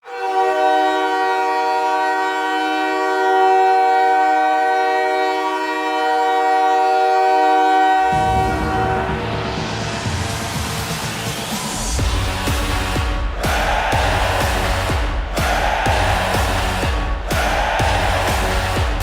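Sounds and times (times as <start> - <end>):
goal horn chord: 0.0 - 9.8, 12.0 - 19.0
goal song music: 7.8 - 19.0.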